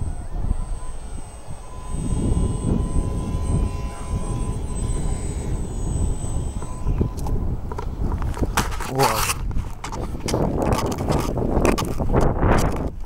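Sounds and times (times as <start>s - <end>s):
model plane motor whine: 0.0s - 13.0s
wind rumble on microphone: 0.0s - 13.0s.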